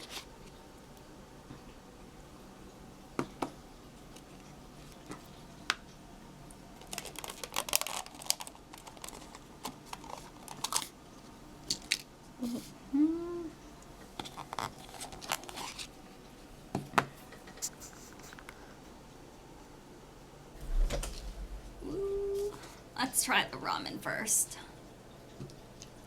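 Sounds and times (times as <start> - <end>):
food packaging crinkling and clicking: 4.1 - 12.1, 14.0 - 16.4
person humming: 12.4 - 13.6, 21.7 - 22.7.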